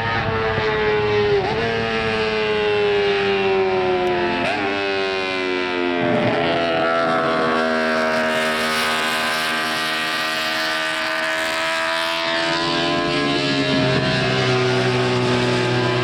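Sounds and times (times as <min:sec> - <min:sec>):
racing motorcycle engine running: 0:00.0 - 0:16.0.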